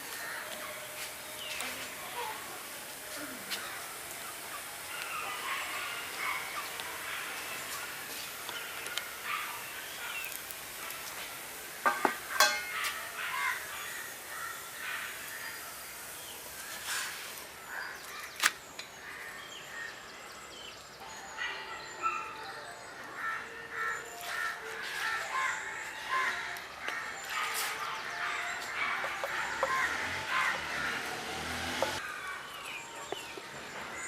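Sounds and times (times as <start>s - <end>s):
outdoor hiss: 0.0s - 20.2s
birds chirping: 17.7s - 34.0s.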